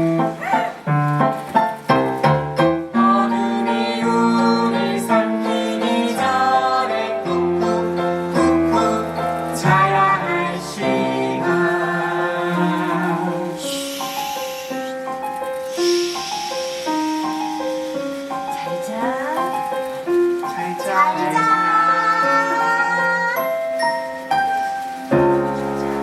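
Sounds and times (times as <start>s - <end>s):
instrumental accompaniment: 0.0s - 26.0s
voices singing long notes: 3.0s - 23.6s.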